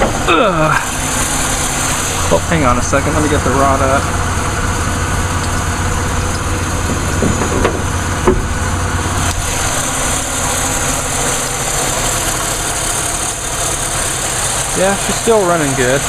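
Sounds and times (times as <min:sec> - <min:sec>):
car engine idling: 0:00.0 - 0:16.0
light engine clicks and knocks: 0:05.3 - 0:09.0.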